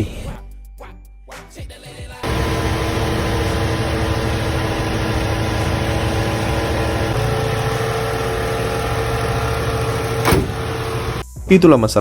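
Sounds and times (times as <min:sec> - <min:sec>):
car engine idling: 0:02.2 - 0:11.2.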